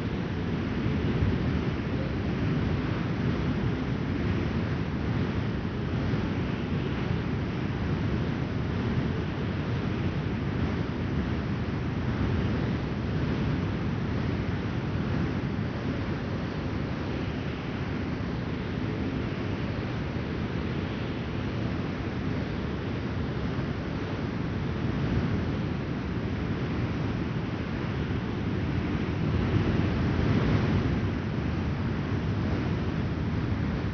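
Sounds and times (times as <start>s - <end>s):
strong gusty wind rumbling: 0.0s - 33.9s.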